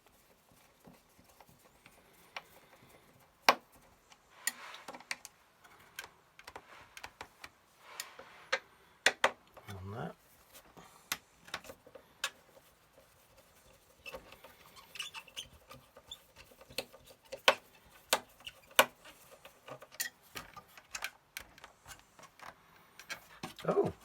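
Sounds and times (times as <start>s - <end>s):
printer parts clicking and scraping: 11.1s - 23.7s.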